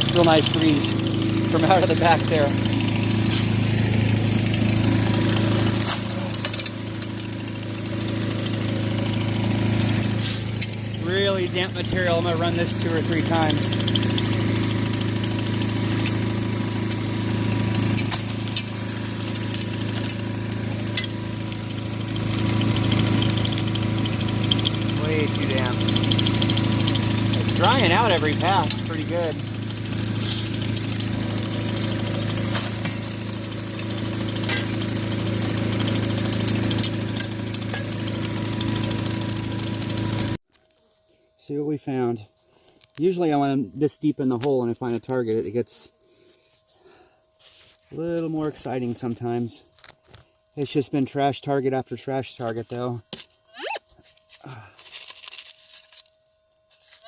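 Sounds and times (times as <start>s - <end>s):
blower motor humming: 0.0s - 40.4s
small engine running: 0.0s - 40.4s, 52.4s - 57.0s.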